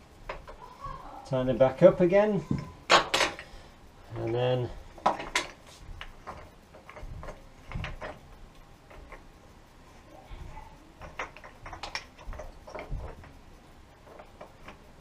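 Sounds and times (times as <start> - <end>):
tap parts clicking and tapping: 0.2 - 0.6, 2.4 - 3.5, 5.0 - 9.3, 10.4 - 13.4, 14.0 - 15.0.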